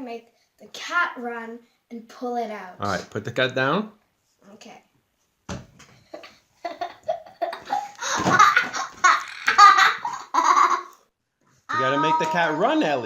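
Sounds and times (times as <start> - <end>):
children laughing: 6.2 - 11.0.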